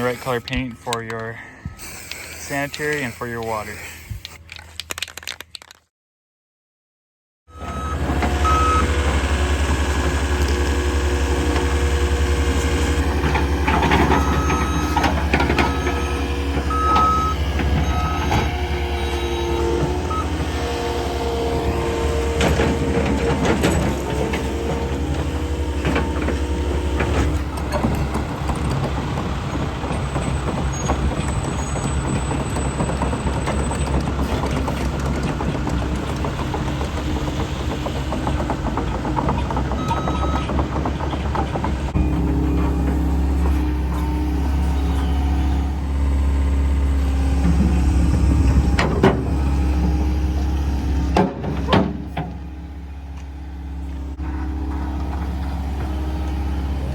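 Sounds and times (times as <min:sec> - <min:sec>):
diesel engine rumble: 0:00.0 - 0:05.8, 0:07.5 - 0:56.9
backup alarm beeping: 0:07.5 - 0:09.0, 0:15.6 - 0:20.4.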